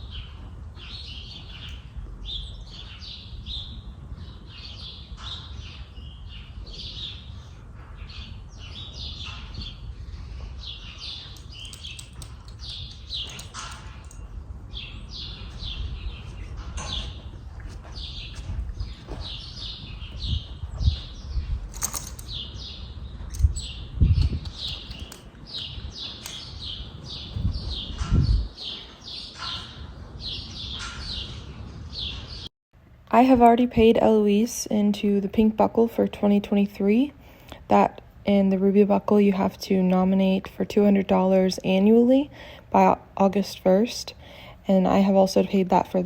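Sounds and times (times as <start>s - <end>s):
small birds chirping: 0.0s - 32.5s
wind rumble on microphone: 0.0s - 32.5s
low bumps: 11.4s - 32.5s.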